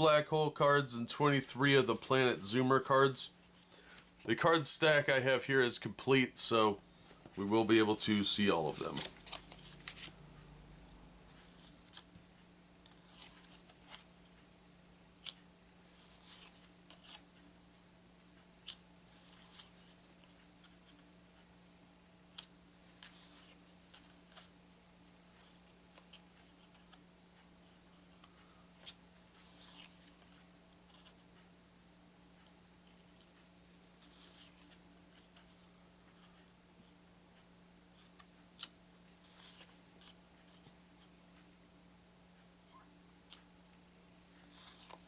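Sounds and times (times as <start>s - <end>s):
cardboard cards rustling and clicking: 7.0s - 10.5s, 11.2s - 12.2s, 12.8s - 14.1s, 15.2s - 17.4s, 18.6s - 21.1s, 22.3s - 24.5s, 25.3s - 27.0s, 28.0s - 31.3s, 34.0s - 36.4s, 38.0s - 40.8s, 44.4s - 45.0s.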